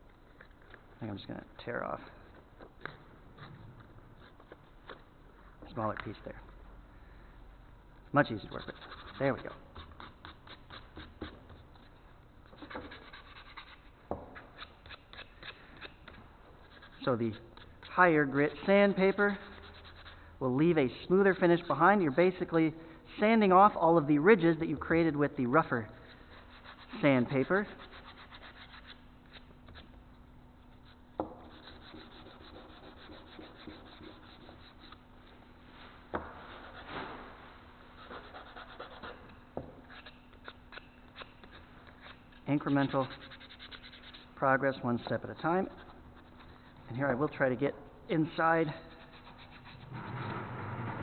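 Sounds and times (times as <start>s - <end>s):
sandpaper rubbing on wood: 8.5s - 11.4s, 12.5s - 15.3s, 16.6s - 17.4s, 18.5s - 20.1s, 26.3s - 29.0s, 31.4s - 35.0s, 38.0s - 39.2s, 42.0s - 44.3s, 48.7s - 50.2s.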